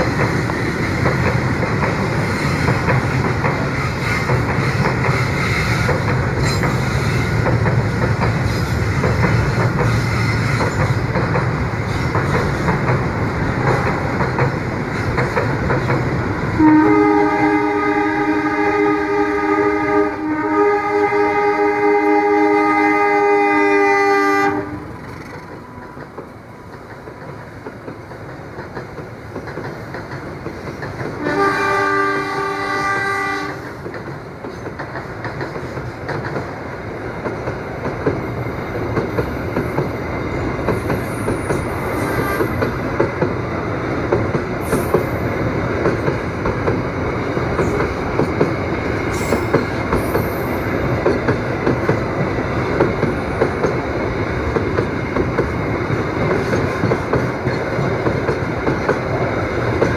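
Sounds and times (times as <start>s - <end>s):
train wheels clattering on rails: 0.0s - 59.9s
train horn blast: 3.7s - 7.4s, 8.6s - 11.0s, 16.6s - 25.0s, 31.2s - 33.8s.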